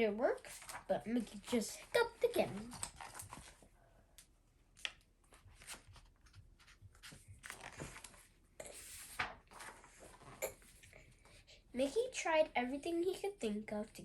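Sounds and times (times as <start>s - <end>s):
paper pages rustling: 0.3s - 10.9s
page turning swishes: 0.4s - 1.6s, 2.5s - 3.7s, 4.8s - 10.4s.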